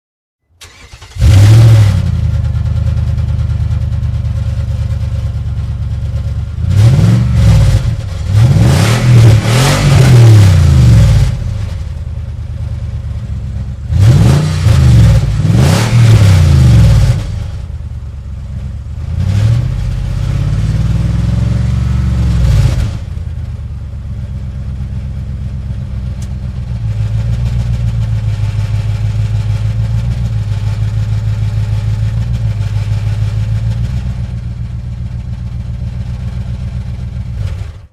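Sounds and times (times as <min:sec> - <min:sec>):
sports car engine revving: 0:06.5 - 0:11.8, 0:13.8 - 0:17.5, 0:18.9 - 0:23.2.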